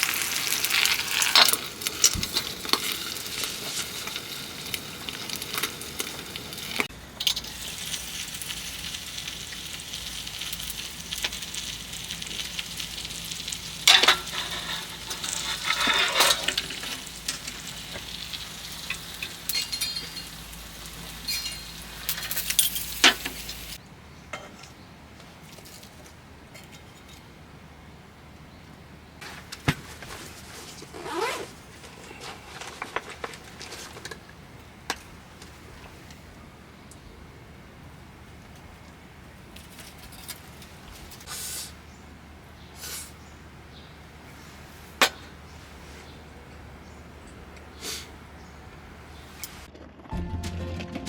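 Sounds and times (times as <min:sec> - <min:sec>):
food sizzling in a frying pan: 0:00.0 - 0:23.8
utensils clinking and scraping: 0:13.8 - 0:23.8.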